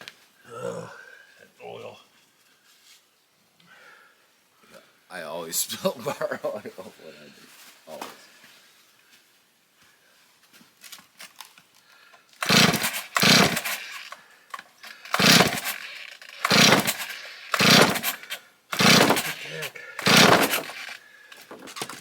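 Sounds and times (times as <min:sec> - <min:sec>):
chainsaw engine cranking: 0:12.2 - 0:22.0
chainsaw starter cord yanks: 0:12.3 - 0:22.0.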